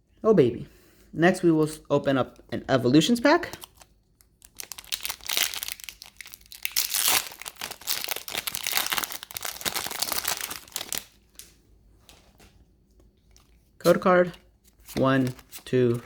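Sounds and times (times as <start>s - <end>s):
foil wrapper crinkling and tearing: 3.5s - 11.2s.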